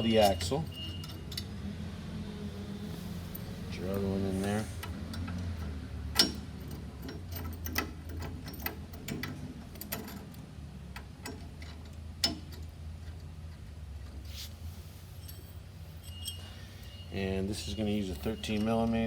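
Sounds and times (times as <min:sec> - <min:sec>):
low steady hum: 0:00.0 - 0:18.9
small metal clicks and taps: 0:10.9 - 0:13.3.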